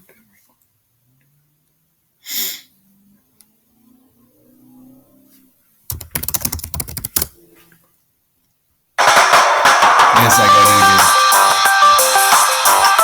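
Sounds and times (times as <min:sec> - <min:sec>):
computer keyboard clicks: 0:05.9 - 0:07.3.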